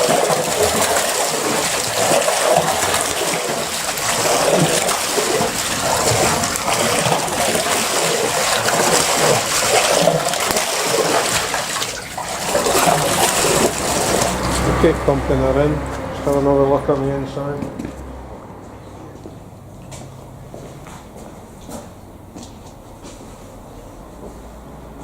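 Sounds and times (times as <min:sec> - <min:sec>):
water splashing and pouring: 0:00.0 - 0:16.4.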